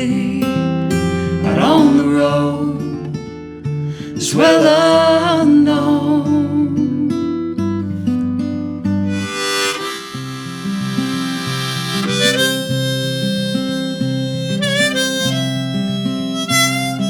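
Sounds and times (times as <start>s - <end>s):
picked acoustic guitar: 0.0s - 17.0s
harmonica playing: 9.1s - 17.0s.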